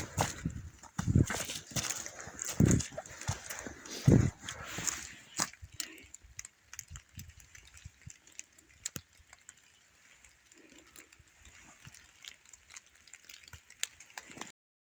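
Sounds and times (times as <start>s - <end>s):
footsteps crunching on snow: 0.0s - 5.6s.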